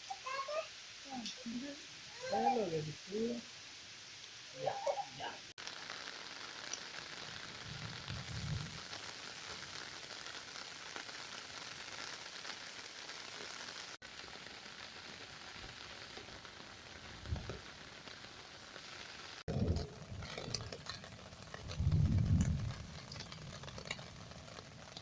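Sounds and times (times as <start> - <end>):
heavy rain falling: 0.0 - 3.5, 4.1 - 25.0
low rumbles: 19.5 - 24.9.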